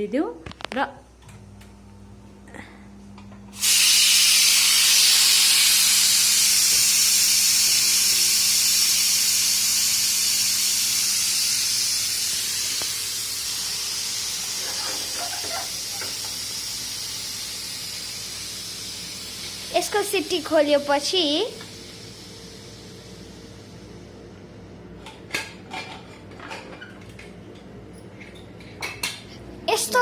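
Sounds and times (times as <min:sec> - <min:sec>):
pressure cooker steam hiss: 0:03.5 - 0:25.9.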